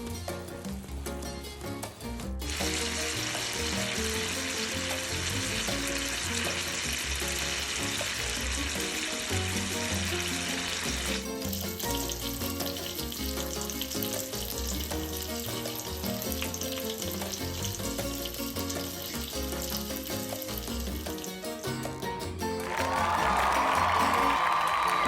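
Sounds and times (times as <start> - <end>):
background music with bass: 0.0 - 25.0
sausages sizzling in a pan: 2.5 - 22.0.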